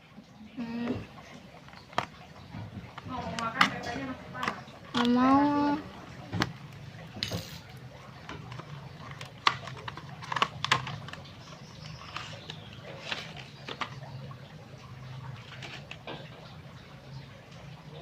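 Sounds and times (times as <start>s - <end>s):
plastic packaging clicks and taps: 1.7s - 5.2s, 8.3s - 14.1s.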